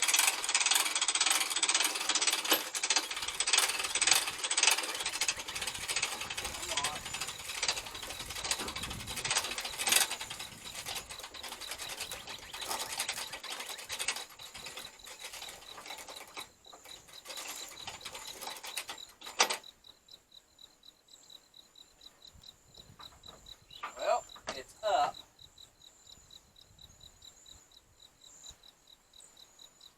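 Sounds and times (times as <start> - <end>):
hand winch ratchet clicking: 0.0 - 19.7.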